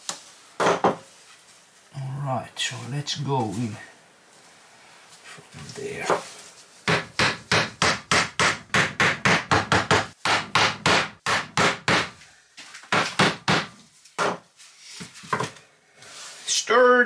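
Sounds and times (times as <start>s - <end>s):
hammer driving nails into wood: 6.9s - 12.2s, 12.9s - 14.4s.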